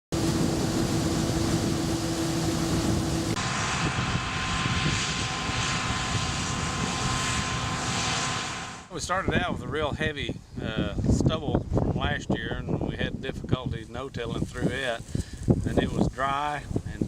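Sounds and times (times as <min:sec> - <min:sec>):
combine harvester engine drone: 0:00.1 - 0:08.9.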